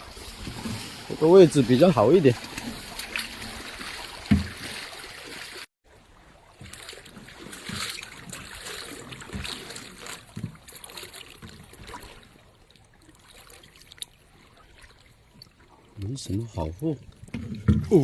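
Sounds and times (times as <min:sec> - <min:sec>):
stream trickling and splashing: 0:00.0 - 0:18.0
knocks and thumps from handling: 0:04.3 - 0:04.6, 0:17.3 - 0:18.0.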